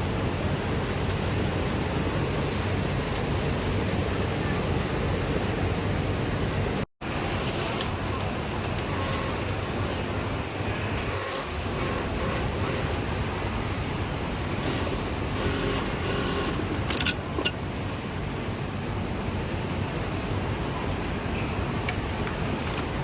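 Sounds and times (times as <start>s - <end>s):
industrial sewing machines running: 8.8s - 16.9s.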